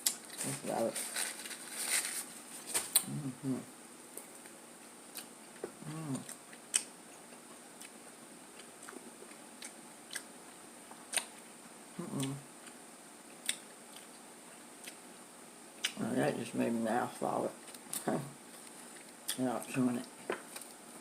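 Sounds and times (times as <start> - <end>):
person humming: 3.0 - 3.7, 5.8 - 6.3, 12.0 - 12.5
person chewing food: 5.1 - 14.2, 14.8 - 15.0.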